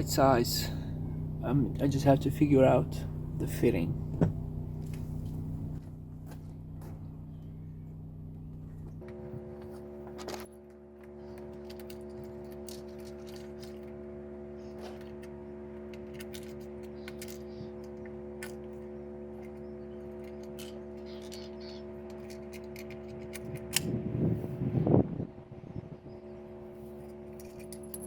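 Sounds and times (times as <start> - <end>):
steady background hum: 0.0 - 28.0.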